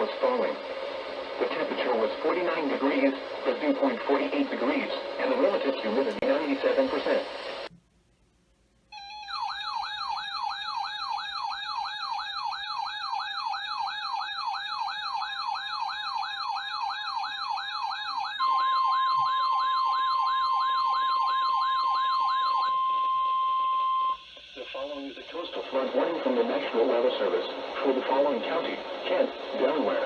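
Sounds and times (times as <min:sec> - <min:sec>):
steady alarm tone: 0:08.9 - 0:30.0
electronic yelp siren: 0:09.0 - 0:24.2.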